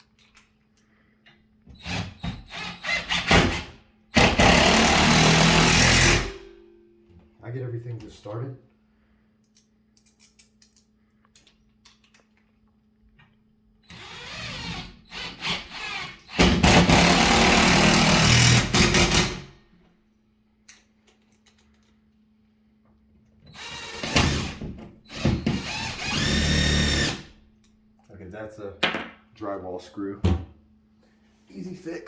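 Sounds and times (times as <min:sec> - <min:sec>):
impact driver driving screws: 0:01.8 - 0:06.4, 0:13.9 - 0:19.5, 0:23.5 - 0:27.3.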